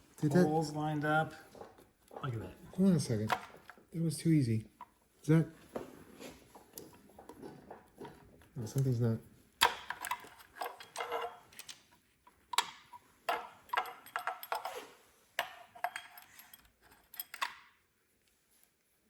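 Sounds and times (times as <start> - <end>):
metal parts and tools clinking: 9.6 - 17.8.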